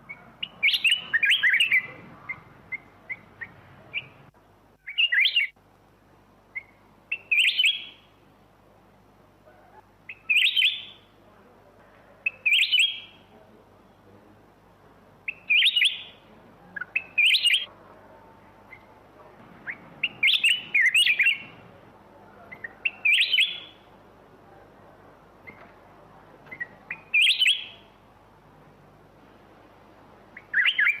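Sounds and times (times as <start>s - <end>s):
bird singing warbled phrases: 0.0s - 5.6s, 6.5s - 8.2s, 9.6s - 11.1s, 12.2s - 14.1s, 15.2s - 17.7s, 18.6s - 24.0s, 25.4s - 25.7s, 26.4s - 28.0s, 30.3s - 31.0s
faint bird chirps: 0.0s - 5.6s, 6.5s - 8.1s, 9.4s - 11.1s, 12.2s - 14.2s, 15.2s - 21.7s, 22.3s - 23.9s, 25.4s - 25.7s, 26.5s - 28.0s, 30.3s - 31.0s.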